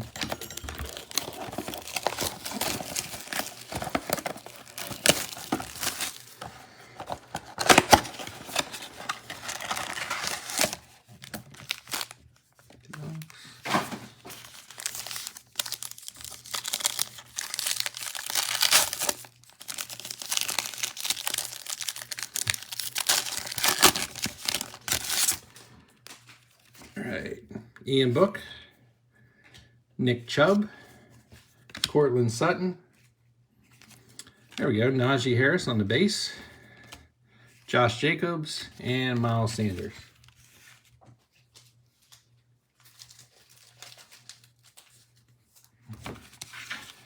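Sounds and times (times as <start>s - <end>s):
wrapper tearing and crinkling: 0.0s - 12.4s, 13.0s - 26.3s, 42.8s - 45.1s
cards handled: 0.0s - 13.0s, 13.6s - 25.4s.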